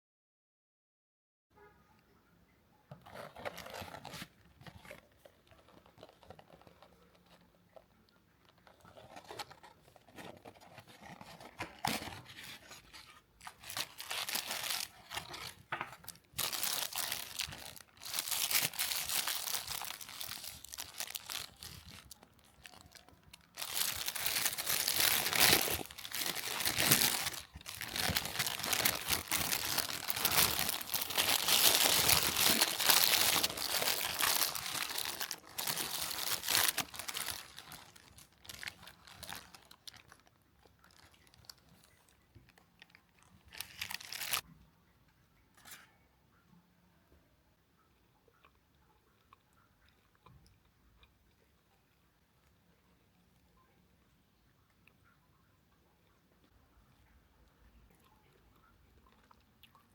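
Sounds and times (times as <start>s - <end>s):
paper packaging rustling and crinkling: 2.9s - 44.4s.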